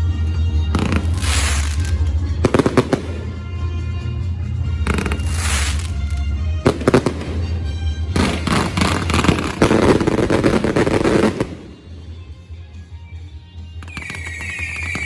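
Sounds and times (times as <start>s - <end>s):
music playing: 0.0s - 15.0s
fireworks crackling: 0.7s - 3.6s, 4.9s - 12.2s, 13.8s - 15.0s.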